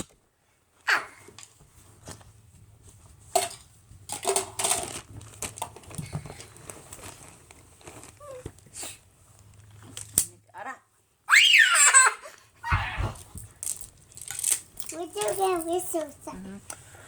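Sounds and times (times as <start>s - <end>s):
balloons crinkling and rubbing: 1.2s - 10.2s, 12.7s - 16.3s.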